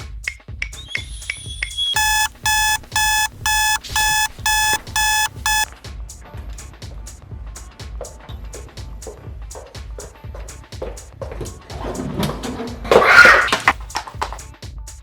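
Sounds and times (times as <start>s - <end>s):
short high electronic alarm beeps: 2.0s - 5.7s
background music with steady beat: 2.0s - 12.0s, 13.8s - 15.0s.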